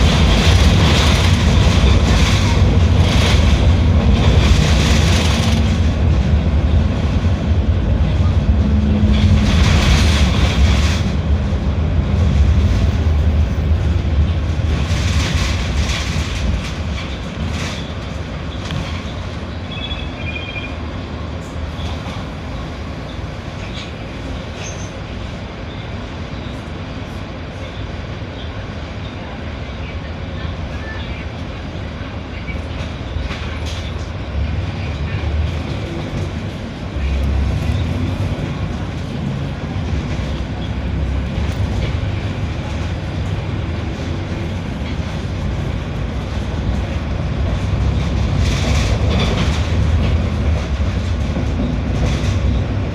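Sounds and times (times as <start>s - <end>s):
bus diesel engine running: 31.1s - 52.9s.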